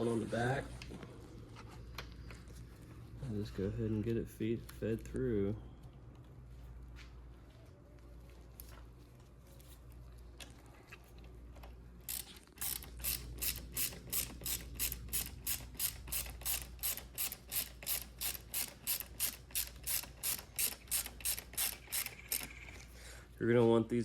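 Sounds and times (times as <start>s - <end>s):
ratchet wrench clicking: 12.1s - 22.8s.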